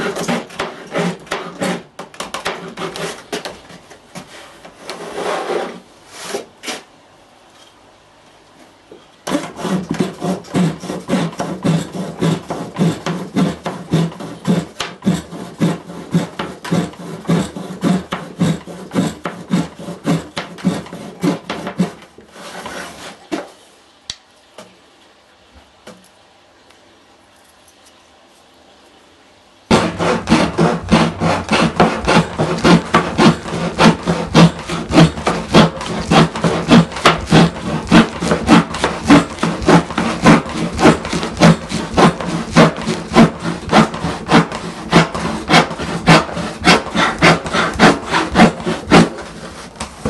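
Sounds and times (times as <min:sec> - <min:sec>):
saw rasping through wood: 0:00.0 - 0:03.4, 0:09.3 - 0:23.2, 0:29.7 - 0:50.0.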